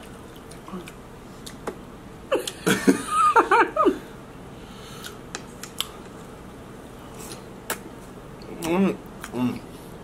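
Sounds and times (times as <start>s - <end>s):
person laughing: 2.3s - 4.1s.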